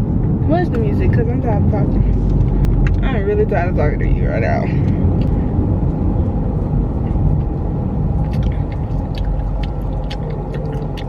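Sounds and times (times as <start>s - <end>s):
car road and engine noise: 0.0s - 11.0s.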